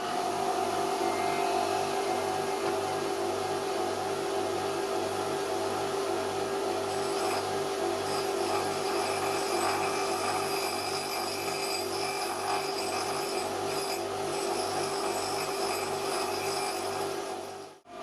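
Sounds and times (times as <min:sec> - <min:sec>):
bench grinder motor humming: 0:00.0 - 0:03.2, 0:06.7 - 0:17.7
dressing tool grinding wheel: 0:06.8 - 0:17.8.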